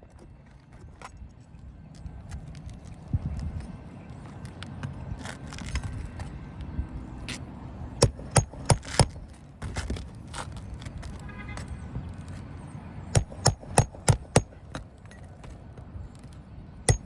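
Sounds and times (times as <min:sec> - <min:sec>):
hand tools scraping shingles: 0:08.0 - 0:09.2
sharp knocks: 0:08.0 - 0:09.2, 0:13.2 - 0:14.8.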